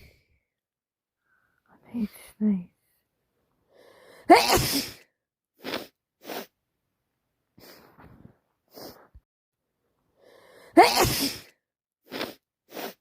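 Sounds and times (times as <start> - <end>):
faint breath: 1.2 - 1.8, 2.8 - 4.3, 10.1 - 10.8
woman sneezing: 4.3 - 5.0, 10.8 - 11.5
sniffing: 5.6 - 6.6, 7.6 - 9.2, 12.0 - 13.0.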